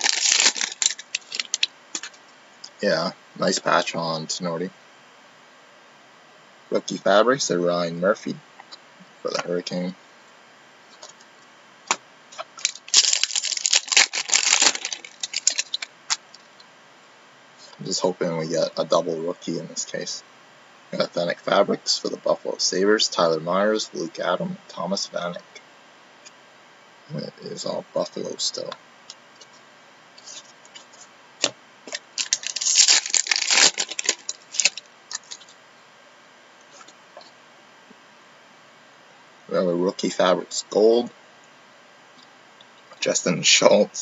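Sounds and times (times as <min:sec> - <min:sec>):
card wrappers crackling: 0:00.0 - 0:02.2, 0:11.9 - 0:16.3, 0:31.9 - 0:35.6.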